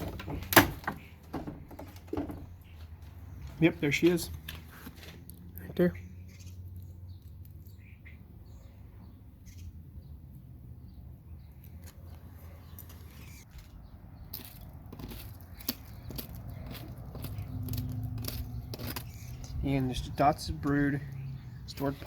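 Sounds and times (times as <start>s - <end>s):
wooden frames clicking and scraping: 0.0s - 5.4s.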